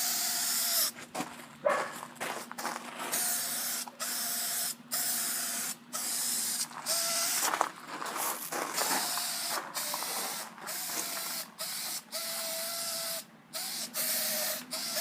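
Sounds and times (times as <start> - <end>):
aerosol can spraying: 8.8 - 15.0.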